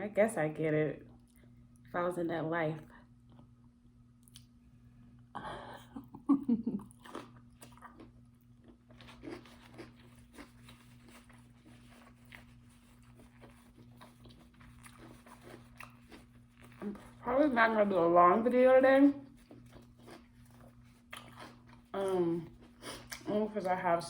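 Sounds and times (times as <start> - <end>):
crunchy chewing: 6.8 - 17.3, 19.2 - 23.3.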